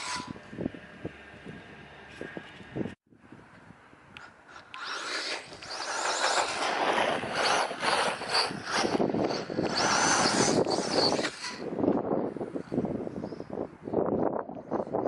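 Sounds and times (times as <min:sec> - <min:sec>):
electric motor high whine: 0:04.1 - 0:11.7
rc truck tyres and drivetrain rattling: 0:04.2 - 0:13.2.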